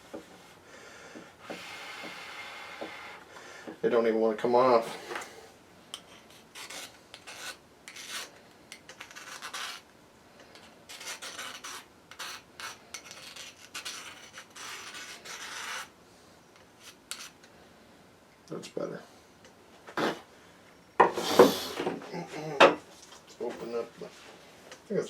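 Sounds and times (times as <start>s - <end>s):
hand tool scraping plastic: 5.9s - 9.8s, 10.4s - 15.9s.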